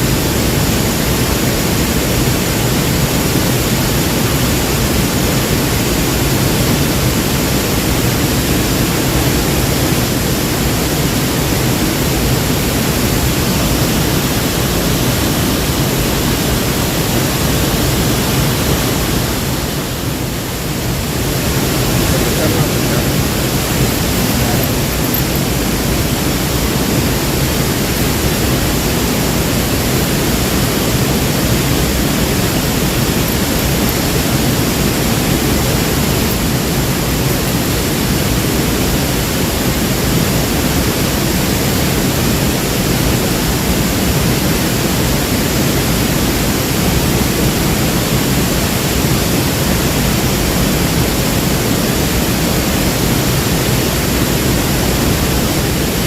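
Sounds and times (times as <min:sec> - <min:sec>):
waterfall roaring: 0:00.0 - 0:56.0.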